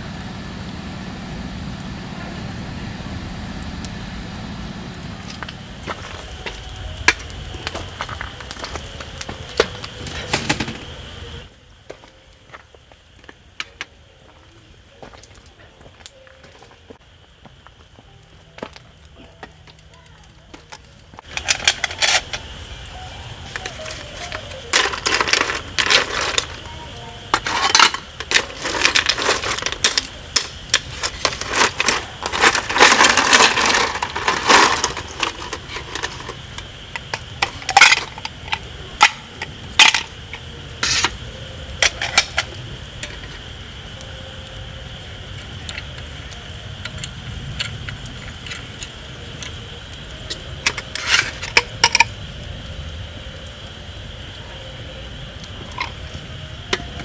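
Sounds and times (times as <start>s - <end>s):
metal cookware clinking: 23.6s - 26.6s, 27.3s - 36.4s.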